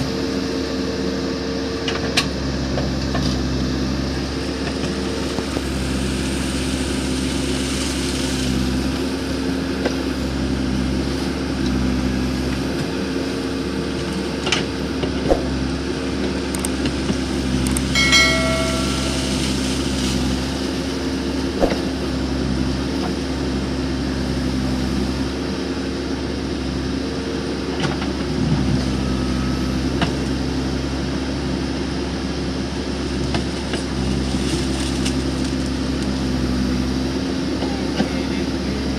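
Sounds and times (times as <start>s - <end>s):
backhoe diesel engine running: 0.0s - 38.9s
short high-pitched tone: 18.0s - 20.2s.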